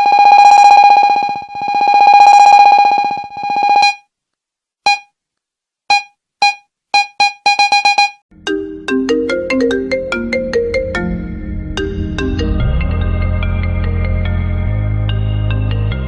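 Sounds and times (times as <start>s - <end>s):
phone ringtone buzzing tone: 0.0s - 4.1s
short electronic beeps: 4.9s - 5.1s, 5.9s - 8.2s.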